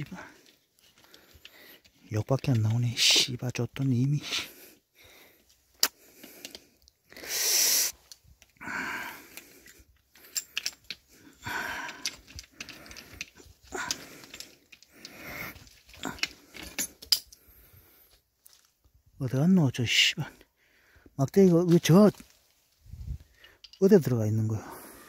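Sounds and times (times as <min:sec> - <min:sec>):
man breathing heavily: 0:00.1 - 0:02.0, 0:04.2 - 0:18.2, 0:20.4 - 0:21.2, 0:24.6 - 0:25.0
metal parts clicking and knocking: 0:09.3 - 0:17.4, 0:23.3 - 0:24.2.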